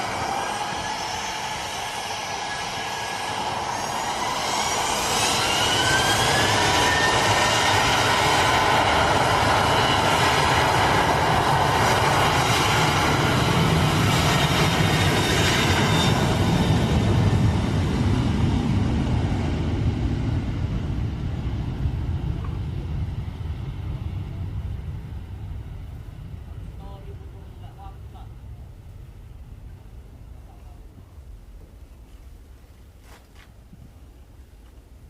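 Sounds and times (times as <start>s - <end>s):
jet engines spooling up: 0.0s - 24.3s.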